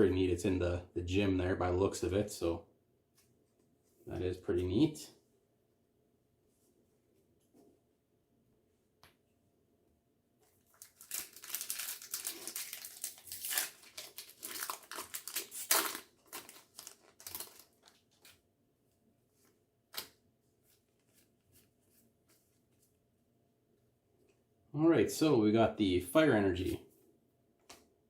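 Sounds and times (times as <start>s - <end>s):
foil wrapper crinkling and tearing: 10.7s - 18.4s.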